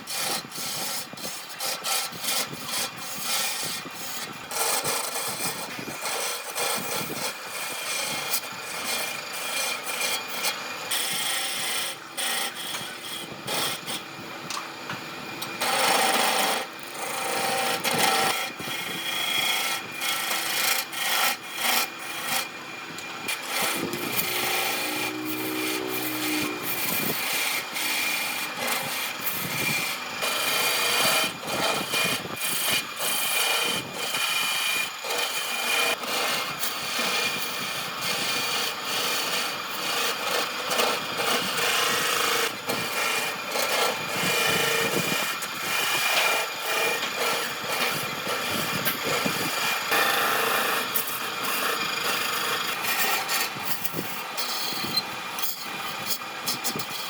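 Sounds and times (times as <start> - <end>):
hand tool scraping wood: 23.2 - 57.0.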